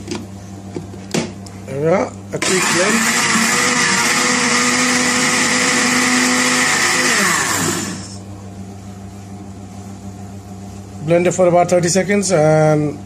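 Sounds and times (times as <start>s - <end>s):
blender running: 2.4s - 8.2s.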